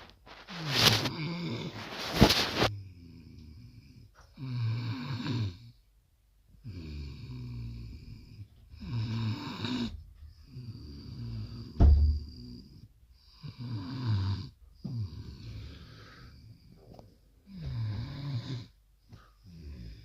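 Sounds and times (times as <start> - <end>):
person snoring: 0.6 - 1.9, 6.6 - 16.7, 17.4 - 18.8, 19.4 - 20.0.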